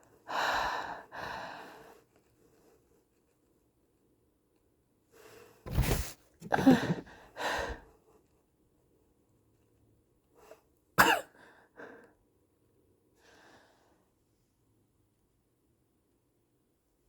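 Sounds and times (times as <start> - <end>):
woman gasping breaths: 0.3 - 1.9.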